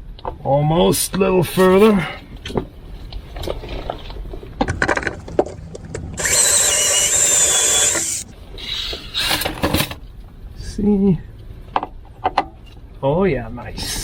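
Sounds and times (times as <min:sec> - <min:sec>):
clicks and knocks of conduit: 0:04.6 - 0:08.2.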